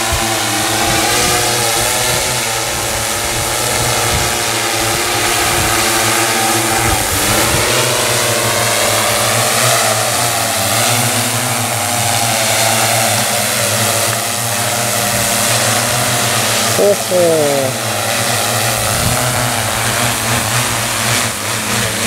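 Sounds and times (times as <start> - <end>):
drone propellers humming: 0.0 - 22.0.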